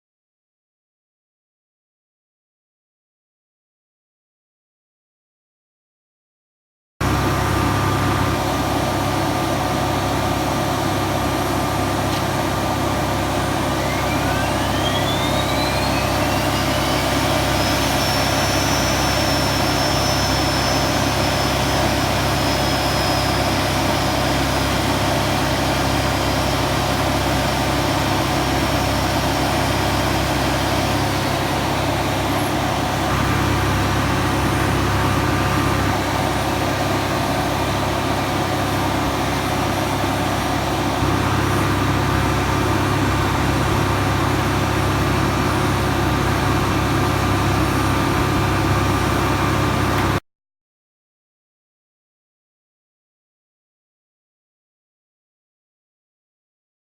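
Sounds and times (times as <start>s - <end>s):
helicopter engine running: 7.1s - 50.2s
turbine whine rising in pitch: 7.2s - 50.2s.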